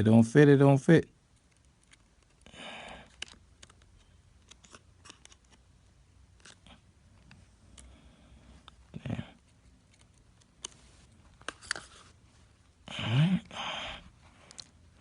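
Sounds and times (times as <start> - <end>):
soft rustle: 6.4 - 12.7.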